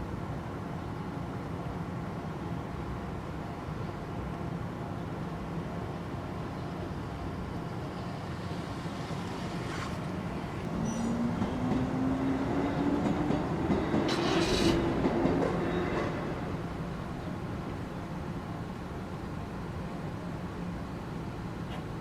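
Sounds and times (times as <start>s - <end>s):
electric train passing: 5.5s - 21.6s
train wheels clacking on rails: 10.7s - 16.9s.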